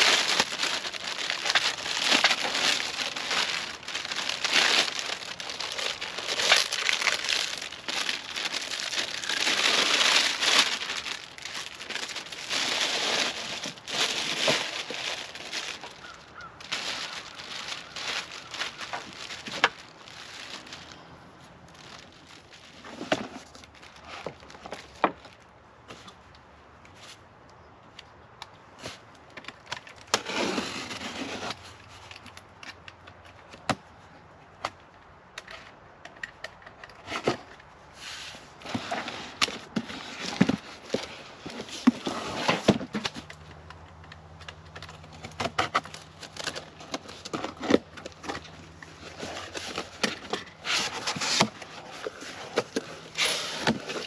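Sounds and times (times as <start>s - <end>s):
scraping: 0.0s - 20.7s
packaging handled: 0.0s - 21.0s, 44.5s - 54.0s
wrap crinkling: 0.0s - 26.1s, 36.8s - 54.0s.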